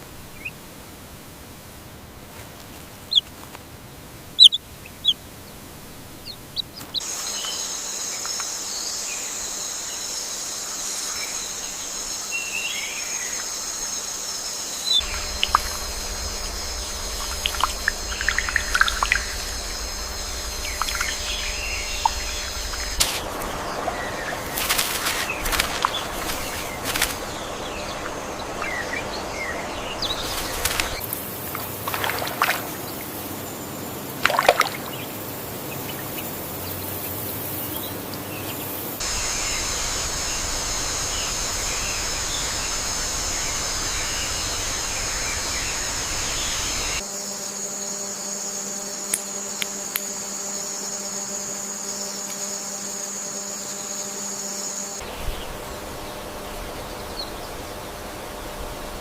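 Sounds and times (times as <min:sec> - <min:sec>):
running water hiss: 0:03.8 - 0:47.2
high insect drone: 0:07.0 - 0:59.0
bird chirps: 0:14.8 - 0:31.1
steady tones: 0:15.0 - 0:31.9.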